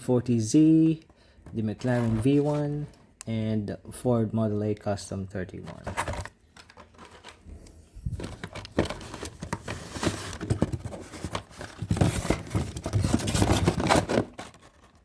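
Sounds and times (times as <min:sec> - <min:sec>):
crinkling plastic and card: 0:05.5 - 0:15.0.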